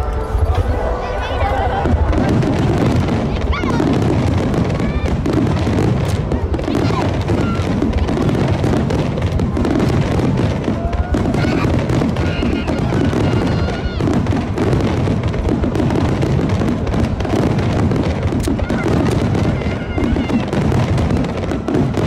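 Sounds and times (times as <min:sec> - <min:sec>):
music: 0:00.0 - 0:02.9
firework bursts and crackling: 0:00.0 - 0:22.0
voices: 0:00.0 - 0:22.0.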